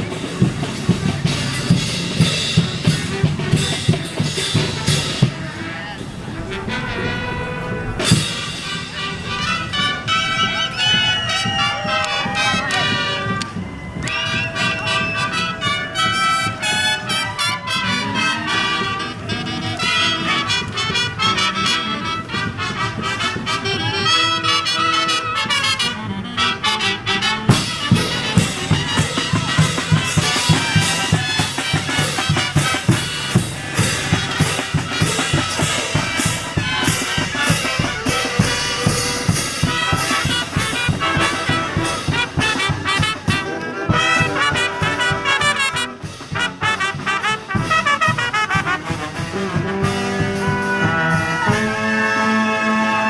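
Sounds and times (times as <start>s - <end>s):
drums driving beat: 0.0s - 5.6s, 8.0s - 17.6s, 27.5s - 51.9s
brass band playing: 0.0s - 53.0s.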